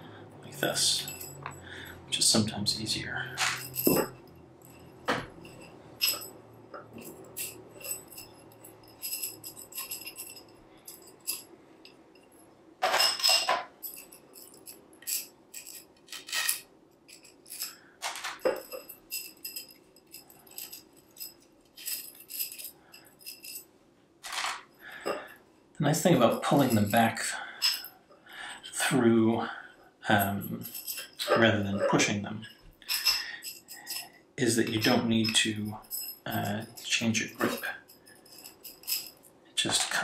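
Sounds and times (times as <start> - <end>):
parts clicking and clattering: 3.3 - 23.6, 24.2 - 25.4, 26.1 - 28.0, 30.2 - 40.0.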